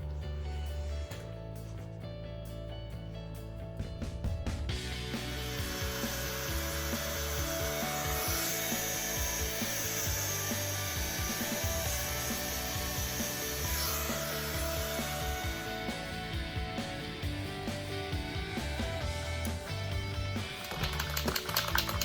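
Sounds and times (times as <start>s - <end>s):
background music: 0.0s - 22.0s
power tool grinding metal: 5.0s - 16.9s.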